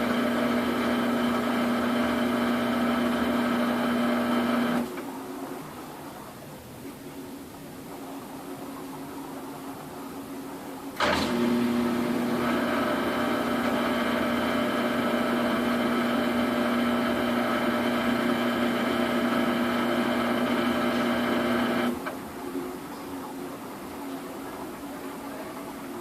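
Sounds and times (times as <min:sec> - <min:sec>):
faint steady whir: 0:00.0 - 0:26.0
washing machine spin hum: 0:00.0 - 0:26.0.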